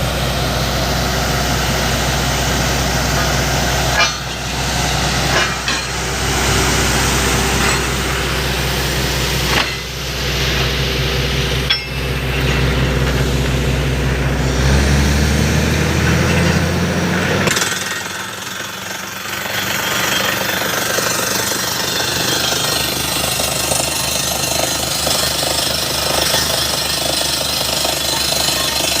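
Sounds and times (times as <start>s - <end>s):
heavy engine droning: 0.0s - 29.0s.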